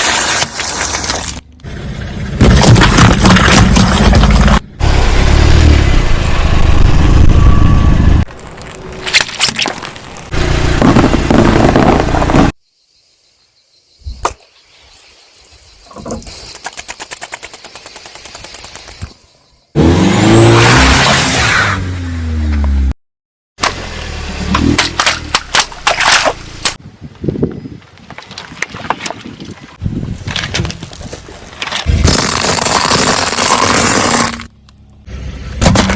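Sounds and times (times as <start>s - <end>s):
car engine: 1.3s - 12.6s, 23.6s - 26.8s, 31.9s - 35.9s
car tyres crunching objects: 2.4s - 5.0s, 8.2s - 12.6s, 23.6s - 26.8s, 30.2s - 34.9s
sharp cracks: 31.8s - 34.5s.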